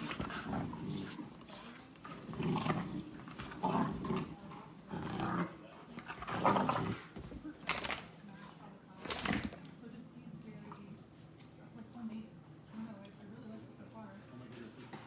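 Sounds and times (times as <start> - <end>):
dog growling: 0.0 - 7.2.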